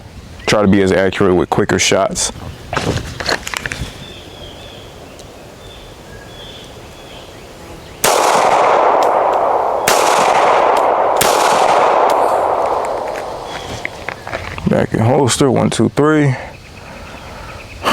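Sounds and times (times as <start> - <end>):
handgun shots echoing: 8.0 - 14.4.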